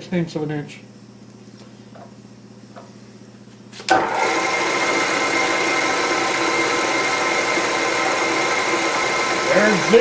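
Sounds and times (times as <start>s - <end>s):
milling machine motor whining: 3.9s - 10.0s.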